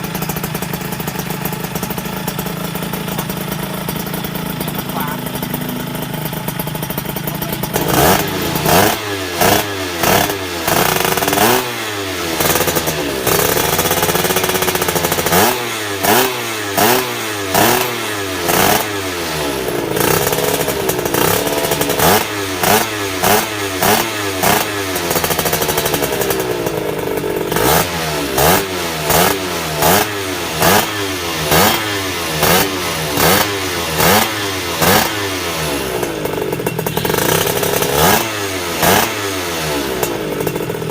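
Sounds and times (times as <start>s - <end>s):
motorcycle engine revving: 0.0s - 40.9s.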